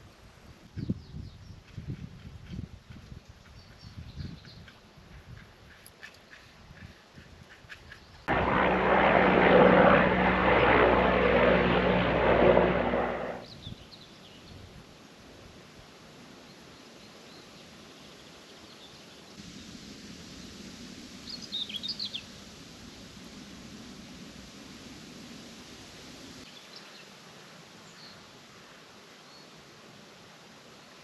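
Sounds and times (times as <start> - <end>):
loud engine drone: 8.3 - 13.4.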